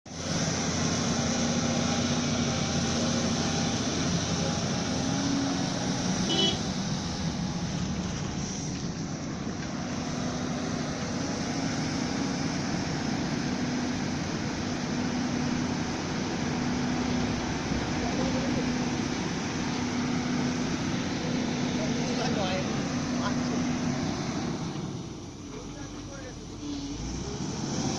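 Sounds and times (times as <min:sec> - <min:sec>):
excavator diesel engine running: 0:00.1 - 0:27.9
people's voices: 0:17.7 - 0:19.7.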